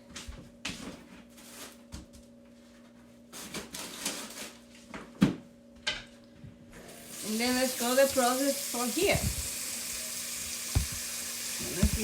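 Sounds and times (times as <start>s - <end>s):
clicks and taps: 10.8s - 11.0s, 11.7s - 12.0s
sharp knock: 10.8s - 11.0s, 11.8s - 12.0s
rustling: 10.8s - 12.0s.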